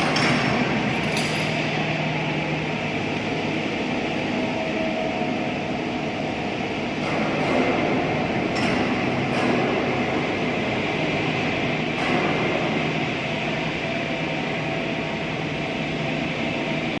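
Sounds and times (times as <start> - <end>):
industrial roar: 0.0 - 17.0.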